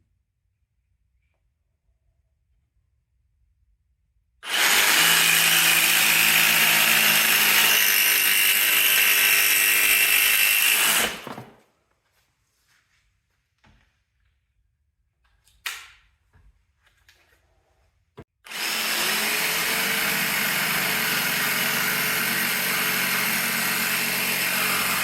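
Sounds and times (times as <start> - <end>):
jigsaw cutting wood: 4.4 - 11.5, 18.4 - 25.0.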